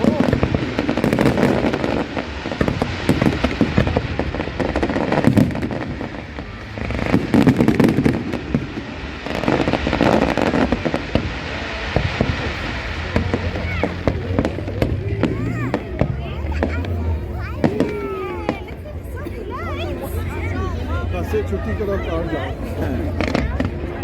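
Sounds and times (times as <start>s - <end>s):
firework shells bursting and crackling: 0.0s - 18.7s.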